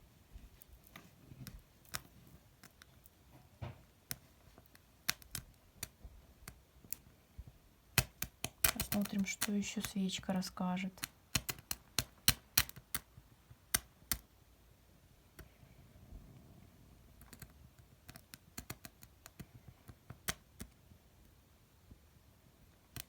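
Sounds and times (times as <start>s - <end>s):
light sharp clicks and taps: 0.4s - 14.3s, 17.2s - 22.0s, 22.6s - 23.0s.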